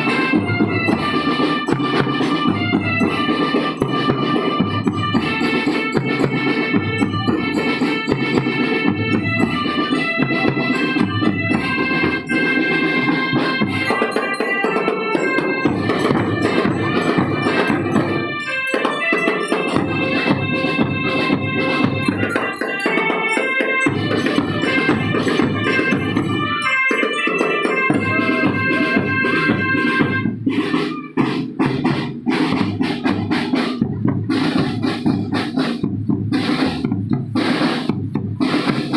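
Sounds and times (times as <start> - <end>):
organ-like held melody: 0.0 - 30.2
steady drum beat: 0.0 - 38.9.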